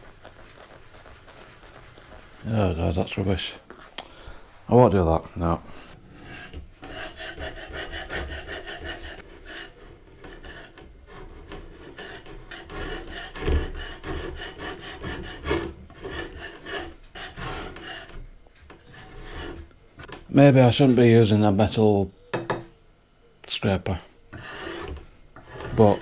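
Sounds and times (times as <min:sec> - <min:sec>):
metal scraper on wooden tabletop: 0:06.0 - 0:20.3, 0:24.3 - 0:26.0.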